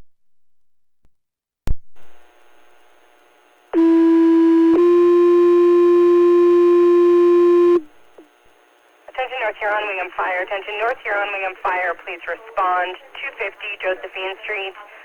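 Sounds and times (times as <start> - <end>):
faint static hiss: 1.7 - 15.0
two-tone paging tones: 3.8 - 7.8.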